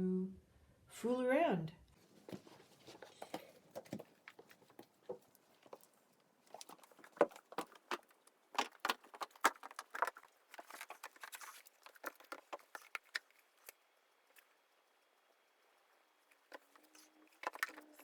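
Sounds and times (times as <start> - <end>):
book covers tapping and knocking: 2.1 - 5.9, 6.5 - 13.4, 16.4 - 18.0.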